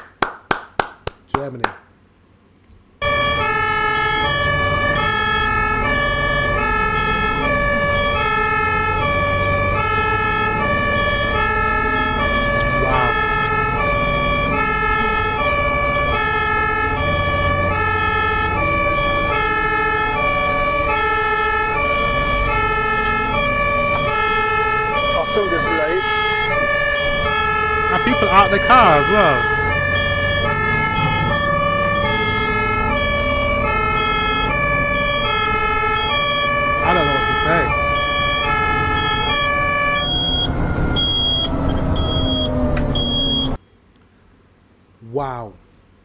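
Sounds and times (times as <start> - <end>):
ambulance two-tone siren: 3.0 - 43.6.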